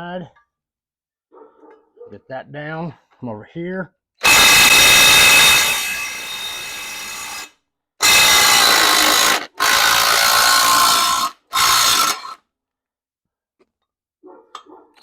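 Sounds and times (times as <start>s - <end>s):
power drill driver running: 4.2s - 12.4s.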